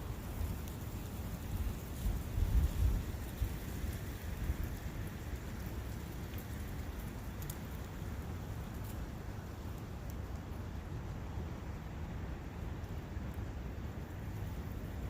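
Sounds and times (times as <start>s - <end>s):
wind: 0.0s - 15.0s
faint ticks: 2.0s - 10.7s.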